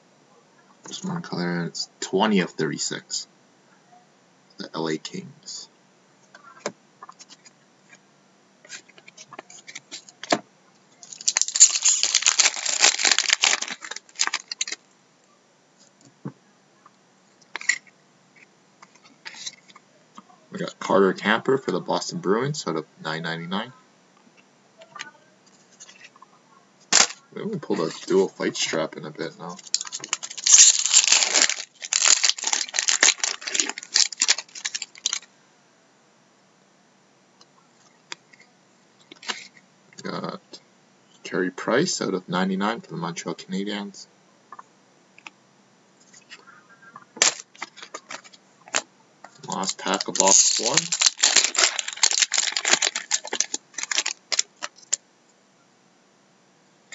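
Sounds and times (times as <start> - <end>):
packaging crinkling rustle: 11.0 - 14.9, 26.9 - 27.2, 29.5 - 35.3, 47.2 - 55.0.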